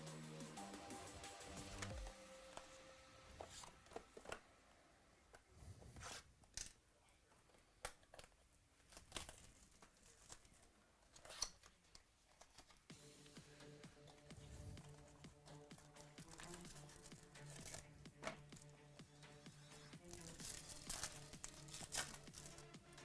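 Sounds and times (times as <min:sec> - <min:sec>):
background music: 0:00.0 - 0:05.2, 0:12.9 - 0:23.0
wrappers tearing and crinkling: 0:08.8 - 0:12.8, 0:15.8 - 0:18.0, 0:20.0 - 0:23.0.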